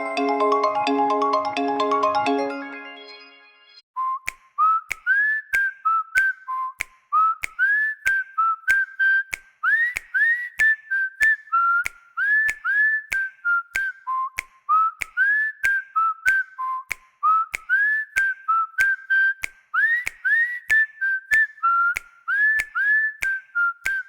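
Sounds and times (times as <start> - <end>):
whistled ringtone melody: 0.0 - 6.8.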